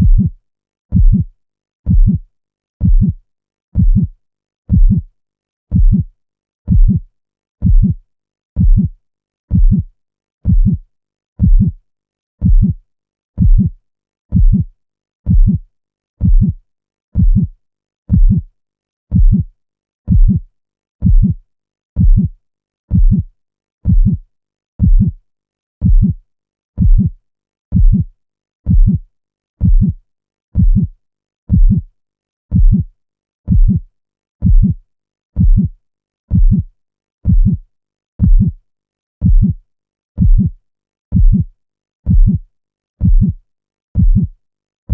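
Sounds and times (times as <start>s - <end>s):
heartbeat thumps: 0.0s - 0.3s, 0.9s - 1.3s, 1.9s - 2.2s, 2.8s - 3.2s, 3.8s - 4.1s, 4.7s - 5.0s, 5.7s - 6.1s, 6.7s - 7.0s, 7.6s - 8.0s, 8.6s - 8.9s, 9.5s - 10.8s, 11.4s - 11.8s, 12.4s - 12.8s, 13.4s - 13.7s, 14.3s - 14.7s, 15.3s - 15.6s, 16.2s - 16.6s, 17.2s - 17.5s, 18.1s - 18.4s, 19.1s - 19.5s, 20.1s - 20.4s, 21.0s - 21.4s, 22.0s - 22.3s, 22.9s - 23.2s, 23.8s - 24.2s, 24.8s - 25.2s, 25.8s - 26.2s, 26.8s - 27.1s, 27.7s - 28.1s, 28.7s - 29.0s, 29.6s - 30.0s, 30.6s - 30.9s, 31.5s - 31.8s, 32.5s - 32.9s, 33.5s - 33.8s, 34.4s - 34.8s, 35.4s - 35.7s, 36.3s - 36.6s, 37.2s - 37.6s, 38.2s - 38.6s, 39.2s - 39.6s, 40.2s - 40.5s, 41.1s - 41.5s, 42.1s - 42.4s, 43.0s - 43.4s, 44.0s - 44.3s.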